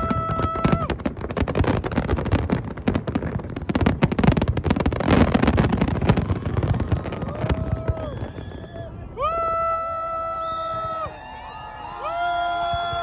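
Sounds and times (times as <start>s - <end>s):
fireworks bursting and crackling: 0.0s - 8.9s.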